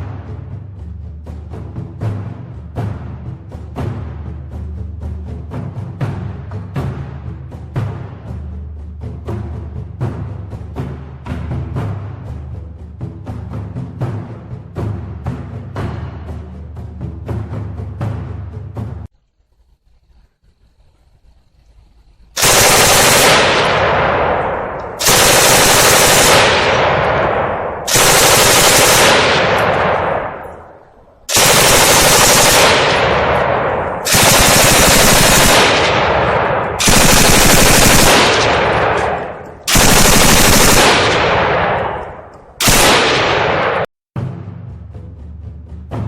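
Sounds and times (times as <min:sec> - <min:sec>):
machine gun automatic fire: 0:22.4 - 0:43.9.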